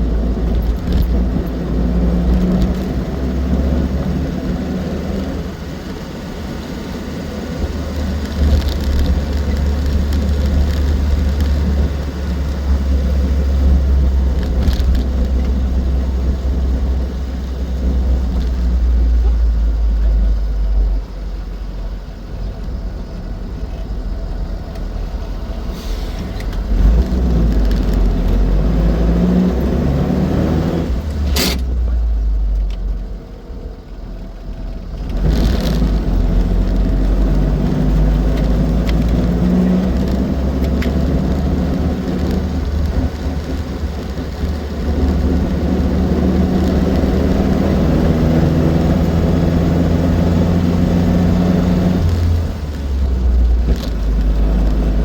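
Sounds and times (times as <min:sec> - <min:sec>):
car engine running: 0:00.0 - 0:25.7, 0:26.4 - 0:55.0
sharp click: 0:31.1 - 0:31.7.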